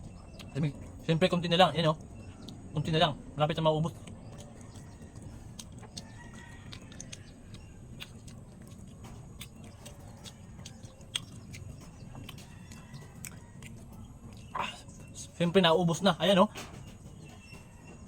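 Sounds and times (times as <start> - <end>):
person chewing: 0.0 - 1.0, 3.9 - 15.2
chickens clucking: 0.0 - 18.0.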